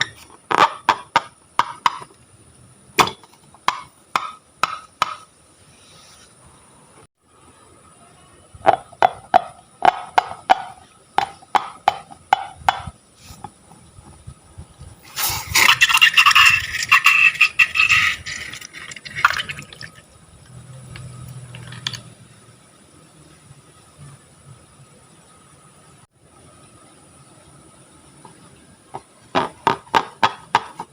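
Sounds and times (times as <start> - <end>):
liquid pouring into container: 15.5 - 20.1.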